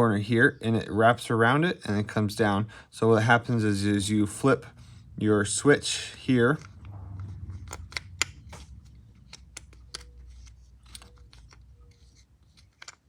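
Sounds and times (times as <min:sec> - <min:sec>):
faint low hum: 0:01.7 - 0:13.0.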